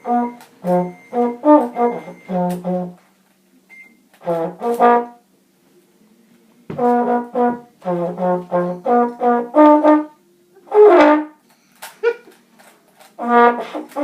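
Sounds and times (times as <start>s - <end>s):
trombone short notes: 0.0s - 3.0s, 4.2s - 5.2s, 6.7s - 11.4s, 13.2s - 14.0s.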